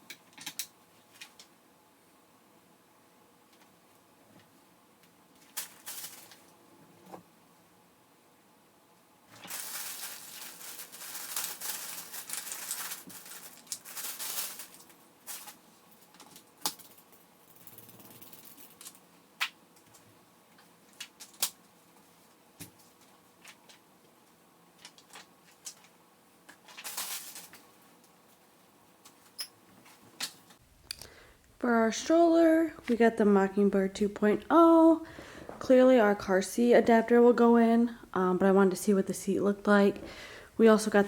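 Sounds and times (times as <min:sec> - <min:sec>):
rustling: 0:05.3 - 0:06.6, 0:09.3 - 0:18.9, 0:26.6 - 0:27.8.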